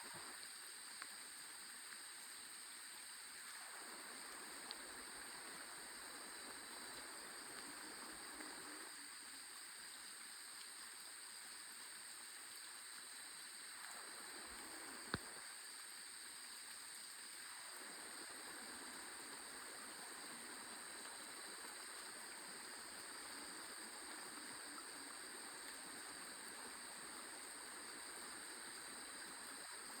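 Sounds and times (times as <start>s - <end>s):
stream flowing: 0.0s - 30.0s
small ticks: 3.4s - 9.4s, 13.7s - 16.0s.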